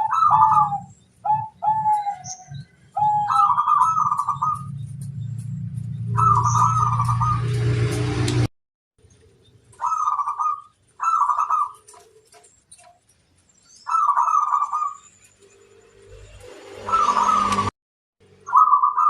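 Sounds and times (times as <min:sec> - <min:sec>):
dove cooing: 0:00.0 - 0:04.8, 0:06.2 - 0:07.5, 0:09.8 - 0:12.4, 0:18.5 - 0:19.0.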